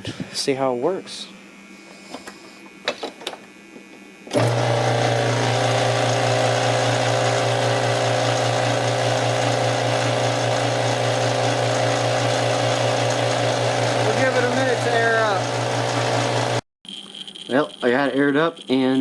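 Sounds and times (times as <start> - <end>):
electric air compressor running: 1.1 - 16.6.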